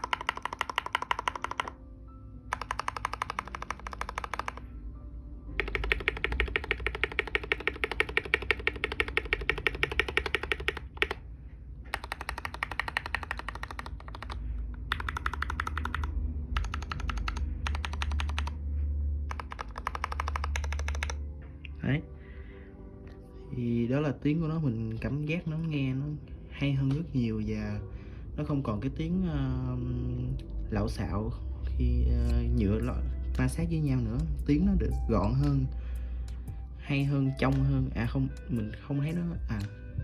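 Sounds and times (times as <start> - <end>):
fast typing on mechanical keyboard: 0.0 - 1.8, 2.5 - 4.7, 5.6 - 11.2, 11.9 - 18.6, 19.3 - 21.2.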